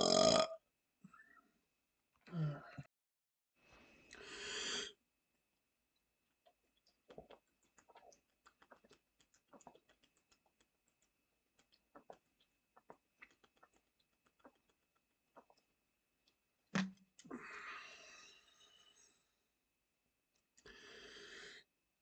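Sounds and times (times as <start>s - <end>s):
faint irregular clicks: 6.5s - 17.3s.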